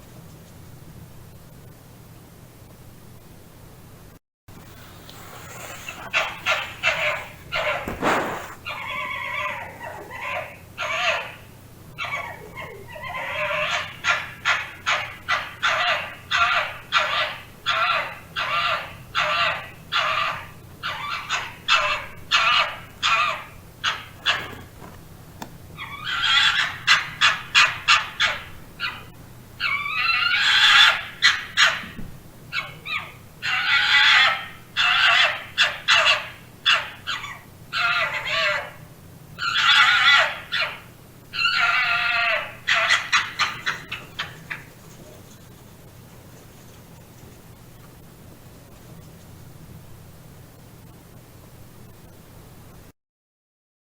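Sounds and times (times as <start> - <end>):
faint hiss: 4.5 - 8.7
fox calling: 5.4 - 25.0, 25.8 - 45.5.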